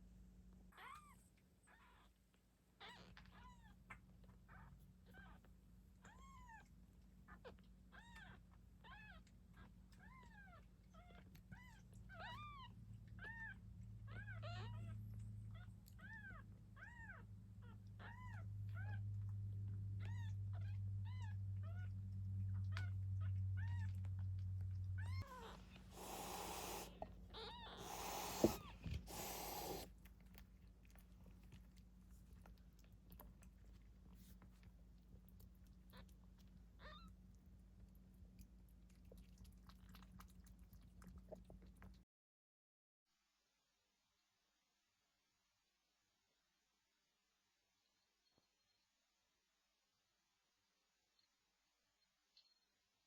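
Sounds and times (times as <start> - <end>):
kittens mewing: 25.1 - 29.9.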